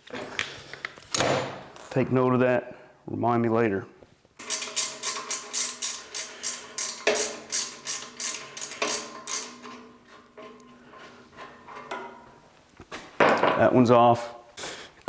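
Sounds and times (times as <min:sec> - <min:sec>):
ratcheting wrench clicking: 0:04.4 - 0:09.9.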